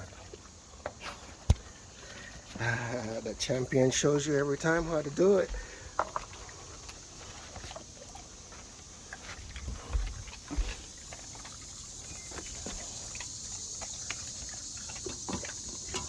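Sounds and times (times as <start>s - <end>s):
low thumps: 1.5s - 1.7s.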